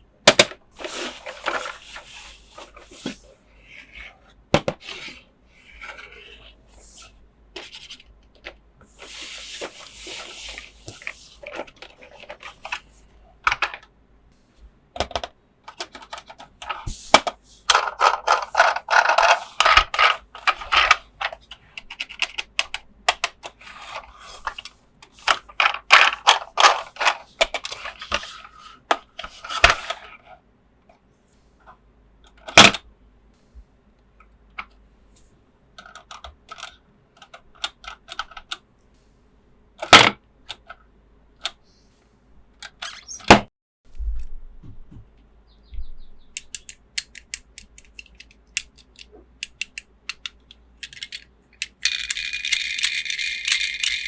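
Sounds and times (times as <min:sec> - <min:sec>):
sharp plastic clicks: 0:46.3 - 0:54.0.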